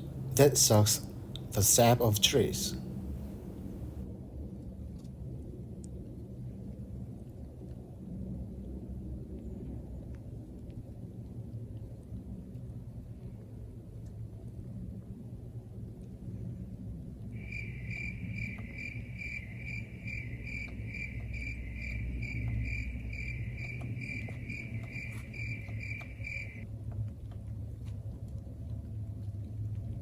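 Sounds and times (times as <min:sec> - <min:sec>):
low steady rumble: 0:00.0 - 0:04.0.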